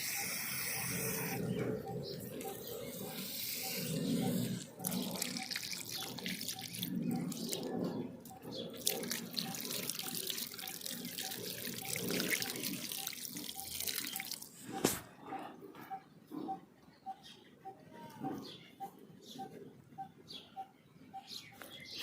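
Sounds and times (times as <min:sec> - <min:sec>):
water splashing and running: 0:04.8 - 0:07.7, 0:08.3 - 0:14.7.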